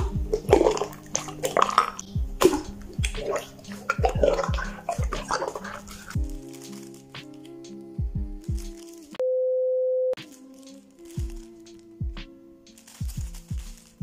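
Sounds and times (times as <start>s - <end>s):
slime squelching: 0.0s - 7.7s
soft background music with beat: 0.0s - 9.2s, 10.2s - 14.0s.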